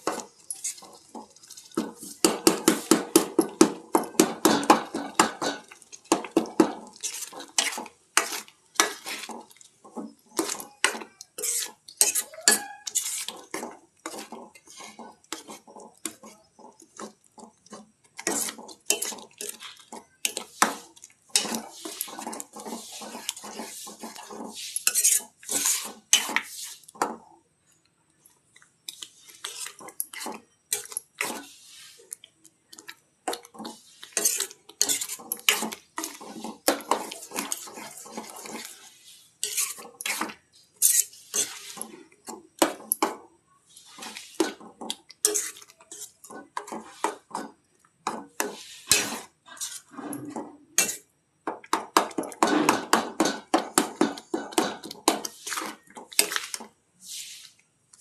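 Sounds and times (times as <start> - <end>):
metal utensils clinking on dishes: 0.0 - 26.4, 29.0 - 31.5, 33.3 - 43.2, 44.0 - 51.0.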